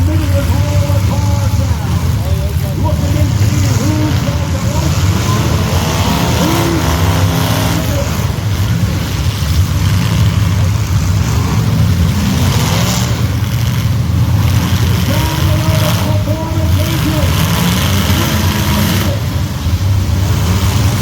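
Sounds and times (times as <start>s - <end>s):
car engines revving loudly: 0.0s - 21.0s.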